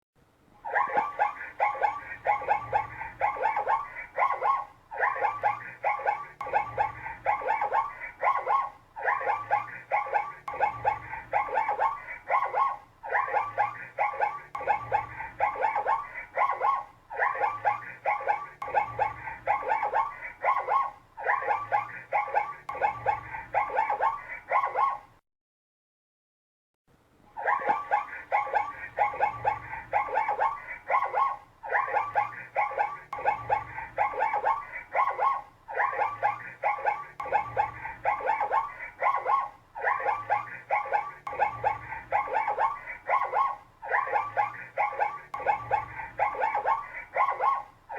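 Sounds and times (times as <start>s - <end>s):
zebra barking call: 0.6s - 25.1s, 27.4s - 47.9s.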